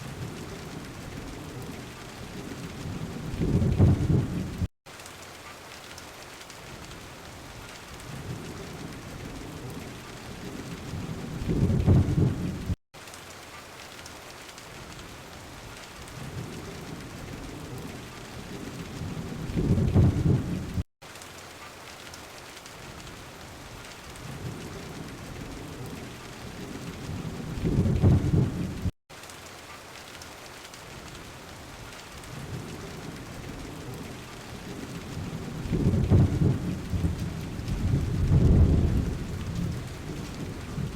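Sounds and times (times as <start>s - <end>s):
heavy rain: 0.0s - 40.9s
thunder rumbling: 0.1s - 4.7s, 8.0s - 12.8s, 16.1s - 20.8s, 24.2s - 28.9s, 32.3s - 40.9s.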